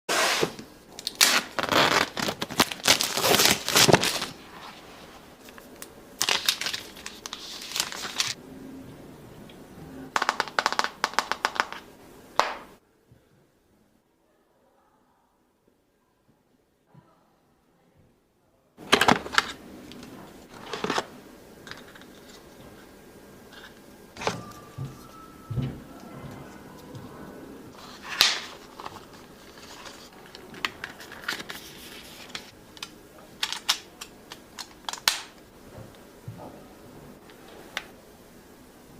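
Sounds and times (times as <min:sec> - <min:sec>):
plastic packaging crinkling and tearing: 0:01.0 - 0:04.5, 0:05.4 - 0:08.4, 0:27.7 - 0:35.4.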